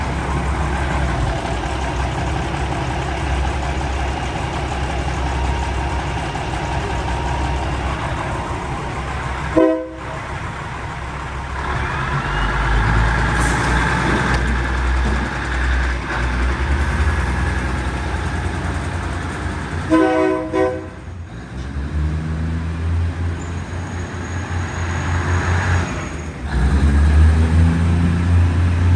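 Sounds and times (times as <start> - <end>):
train rumbling: 0.0 - 28.9
train air horn blast: 9.5 - 10.2, 19.8 - 21.2.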